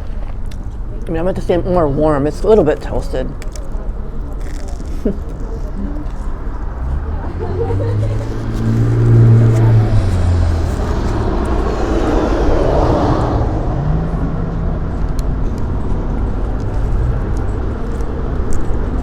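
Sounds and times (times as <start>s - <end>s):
low rumble of traffic: 0.0s - 19.0s
vehicle engine hum: 0.0s - 19.0s
vehicle passing: 4.0s - 19.0s.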